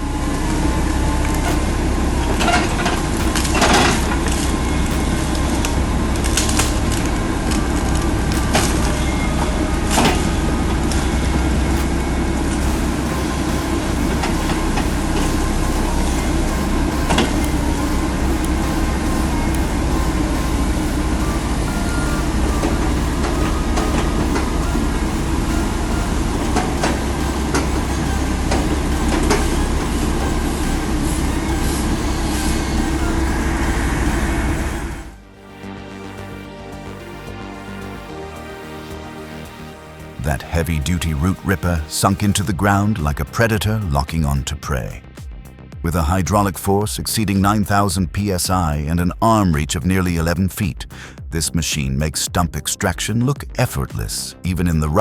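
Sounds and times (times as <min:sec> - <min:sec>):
diesel engine running under load: 0:00.0 - 0:35.3.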